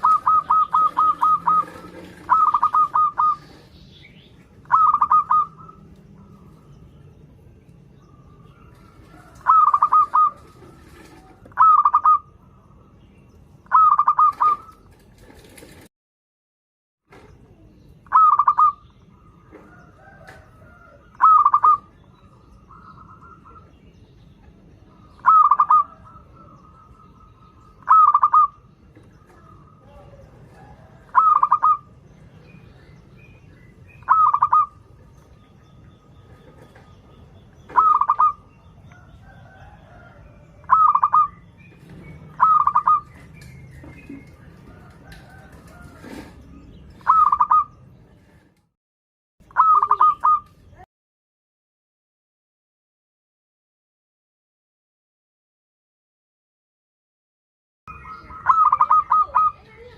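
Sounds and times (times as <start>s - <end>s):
dove cooing calls: 0.0s - 6.7s, 8.1s - 12.6s, 13.6s - 15.8s, 18.0s - 23.8s, 24.9s - 32.2s, 32.9s - 48.4s, 49.5s - 50.5s, 57.9s - 59.9s
faint bird sounds: 0.0s - 15.8s, 17.1s - 48.6s, 49.4s - 50.9s, 57.9s - 59.9s.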